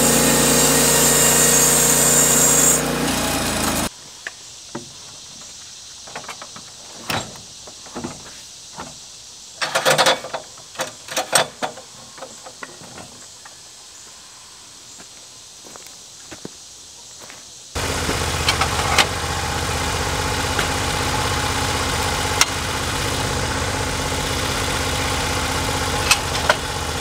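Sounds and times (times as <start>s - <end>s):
sawmill engine running: 0.0s - 3.9s, 17.8s - 27.0s.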